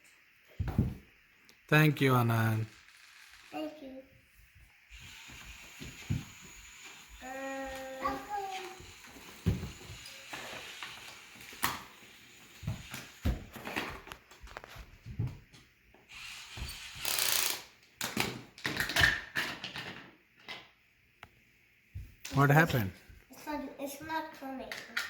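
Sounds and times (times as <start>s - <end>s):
plastic parts clicking and rattling: 17.1s - 20.6s.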